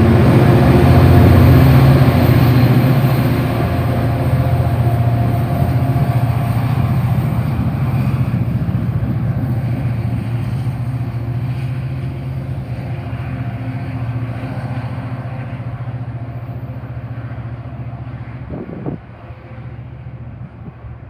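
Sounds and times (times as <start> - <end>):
diesel locomotive droning: 0.0 - 21.0.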